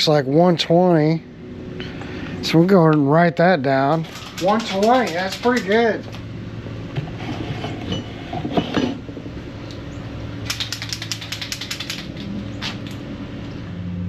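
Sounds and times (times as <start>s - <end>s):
low hum: 0.0s - 4.4s
quick mechanical clicks: 3.9s - 6.0s, 10.4s - 13.0s
tools and parts knocking: 4.0s - 5.9s.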